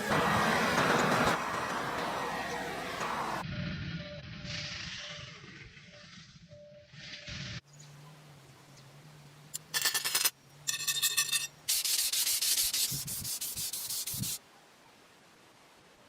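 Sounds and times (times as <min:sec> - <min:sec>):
sanding a metal blade: 0:11.7 - 0:14.4.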